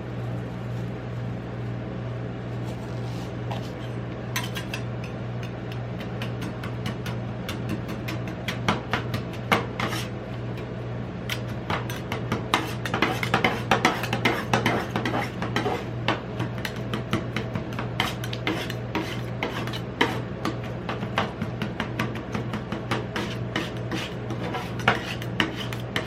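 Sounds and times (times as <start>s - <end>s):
steady low hum: 0.0s - 26.0s
metal spatulas clacking and scraping: 4.4s - 5.6s.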